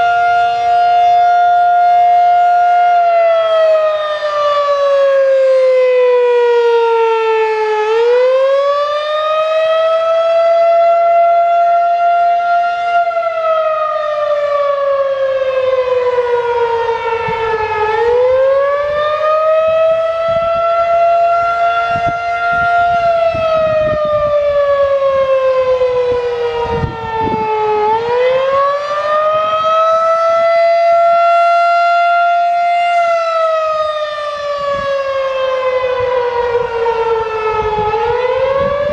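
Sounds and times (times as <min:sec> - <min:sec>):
warning siren wailing: 0:00.0 - 0:38.9.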